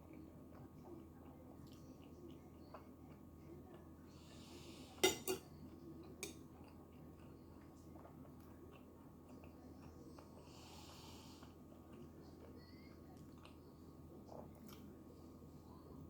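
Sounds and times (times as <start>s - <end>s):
utensil clinking against a dish: 4.9s - 6.5s.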